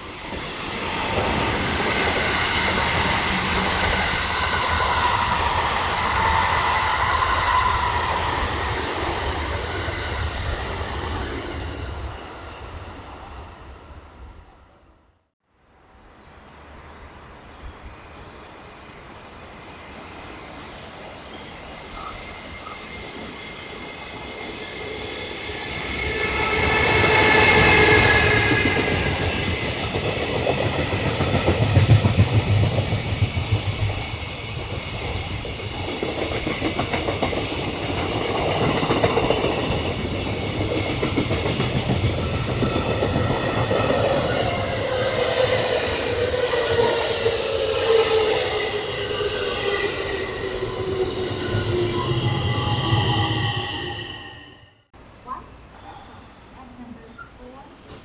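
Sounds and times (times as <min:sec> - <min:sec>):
train whining tone: 0:00.0 - 0:14.9, 0:16.6 - 0:57.5.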